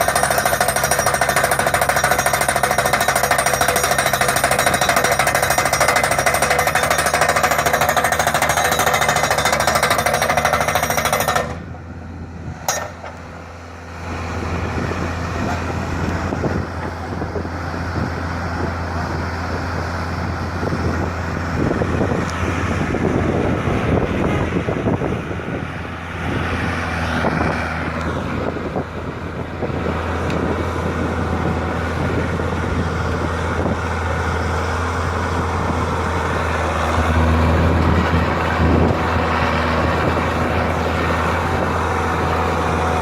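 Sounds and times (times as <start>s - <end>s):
loud mechanical rattle: 0.0s - 11.9s, 29.6s - 43.0s.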